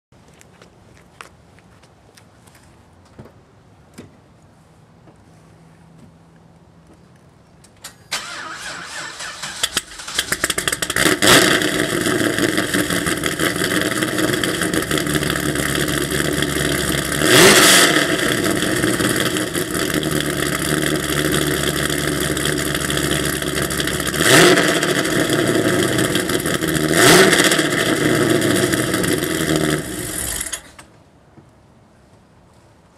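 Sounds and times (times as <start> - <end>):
car engine idling: 8.2 - 30.8.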